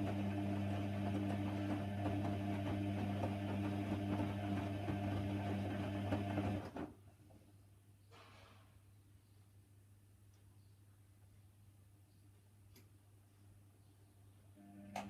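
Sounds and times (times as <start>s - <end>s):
washer-dryer humming: 0.0s - 6.9s.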